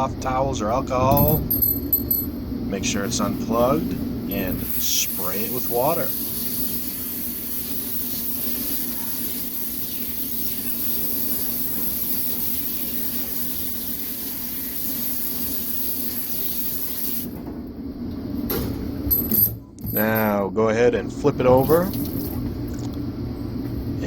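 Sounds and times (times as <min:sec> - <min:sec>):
water spray hissing on keyboard: 0:04.4 - 0:17.3.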